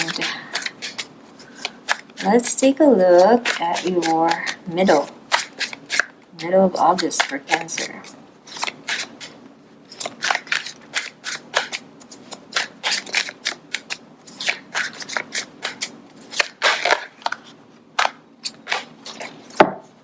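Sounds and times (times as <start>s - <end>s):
cards being shuffled: 0.0s - 19.8s.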